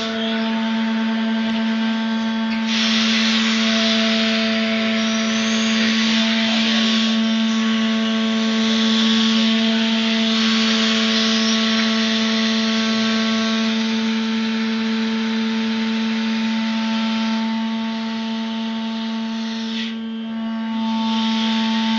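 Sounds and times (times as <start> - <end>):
hydraulic unit hum and whine: 0.0 - 21.9
hiss: 2.6 - 12.4.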